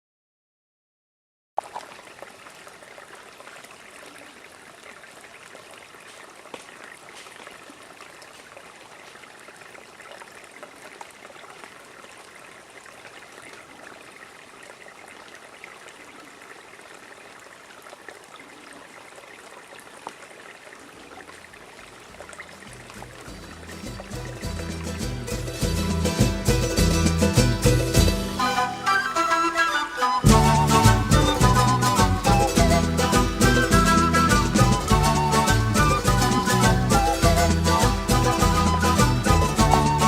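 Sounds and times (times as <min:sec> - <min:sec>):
water trickling: 0:01.6 - 0:40.0.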